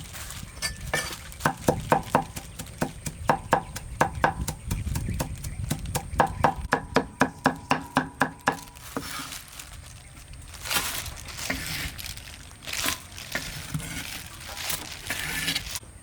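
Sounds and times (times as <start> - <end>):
scraping and rustling: 0.0 - 3.9, 7.6 - 15.8.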